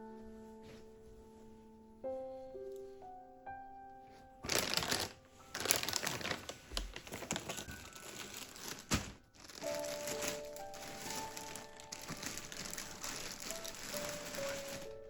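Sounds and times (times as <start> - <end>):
soft piano music: 0.0 - 15.0
packaging crinkling: 4.4 - 15.0.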